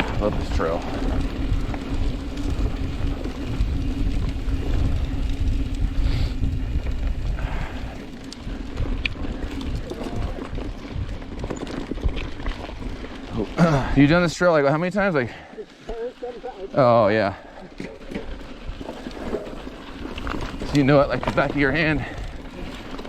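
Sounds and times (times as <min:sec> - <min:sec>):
wind buffeting microphone: 0:00.0 - 0:14.0
bike rattling: 0:00.0 - 0:23.0
tyres rumbling on dirt: 0:00.0 - 0:23.0.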